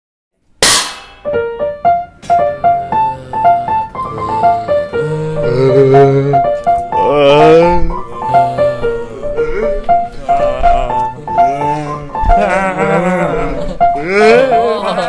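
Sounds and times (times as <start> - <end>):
sharp loud piano hit: 0.6 - 5.0
piano melody of single notes: 0.6 - 15.0
held low piano notes: 0.9 - 15.0.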